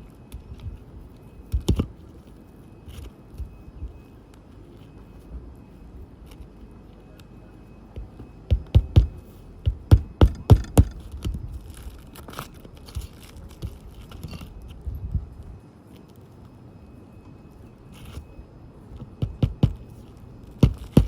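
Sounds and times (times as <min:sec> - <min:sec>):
sharp knocks on roof shingles: 0:08.0 - 0:11.4, 0:19.0 - 0:19.9, 0:20.6 - 0:21.0
scraping and crackling shingles: 0:10.2 - 0:14.8.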